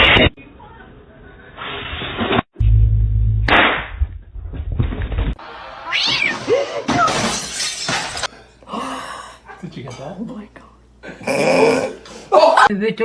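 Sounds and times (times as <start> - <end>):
loud low rumbling noise: 2.6 - 5.2
cat meowing: 5.9 - 6.4.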